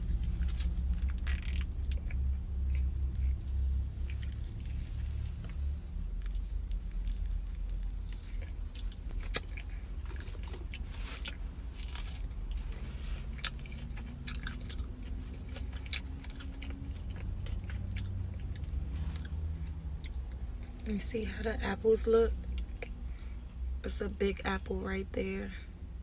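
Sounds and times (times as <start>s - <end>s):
steady low hum: 0.0s - 26.0s
crunchy chewing and biting: 0.1s - 20.4s.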